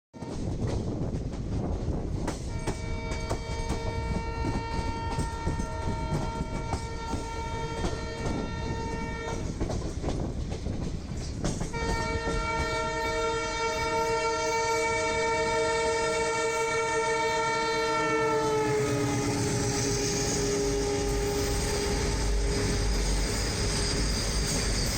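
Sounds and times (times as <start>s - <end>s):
train wheels clattering on rail joints: 0.2s - 14.2s
locomotive horn blasts: 2.5s - 9.6s, 11.7s - 22.6s.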